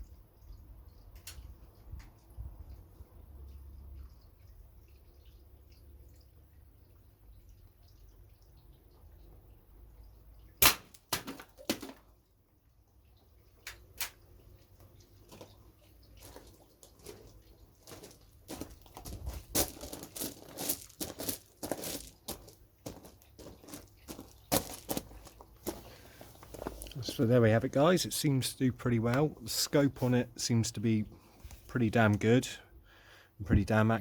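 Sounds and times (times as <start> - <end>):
air rifle shot: 10.6 - 11.0.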